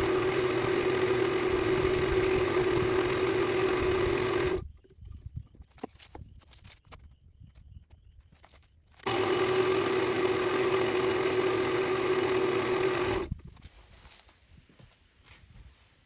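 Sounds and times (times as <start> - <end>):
power tool motor running: 0.0 - 4.6, 9.0 - 13.3.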